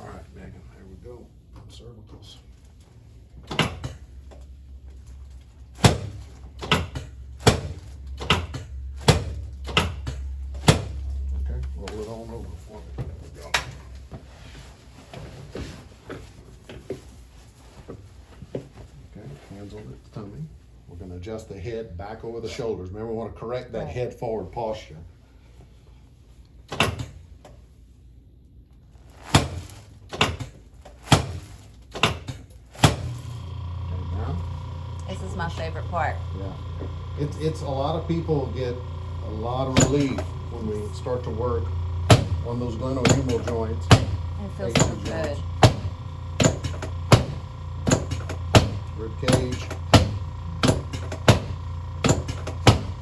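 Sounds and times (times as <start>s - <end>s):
sharp clacks of chiropractic equipment: 29.2s - 33.4s, 45.5s - 53.0s
steady low hum: 32.9s - 53.0s.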